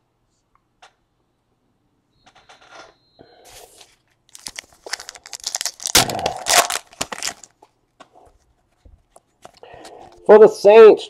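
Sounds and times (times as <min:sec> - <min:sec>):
plastic wrapper crinkling and tearing: 0:04.3 - 0:07.6.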